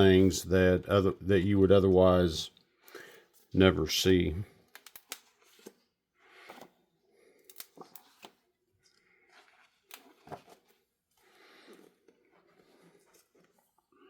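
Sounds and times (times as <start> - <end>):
book pages turning: 4.7 - 6.8, 7.4 - 13.9.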